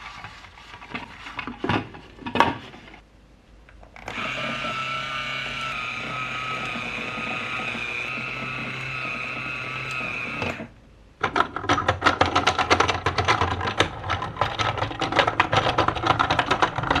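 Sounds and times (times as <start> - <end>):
whirring hum: 0.9 - 11.8
plastic building blocks rattling: 4.0 - 17.0.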